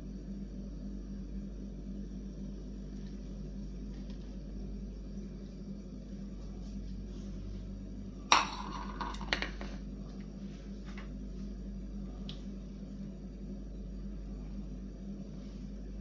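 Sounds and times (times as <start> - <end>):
steady low hum: 0.0 - 16.0
kitchenware clinking: 8.3 - 9.8.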